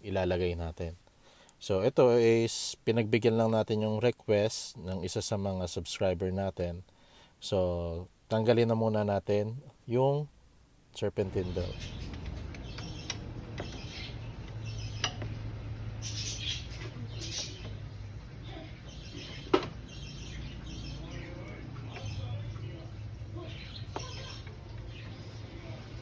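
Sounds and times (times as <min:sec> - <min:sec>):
birds chirping: 0:11.2 - 0:26.0.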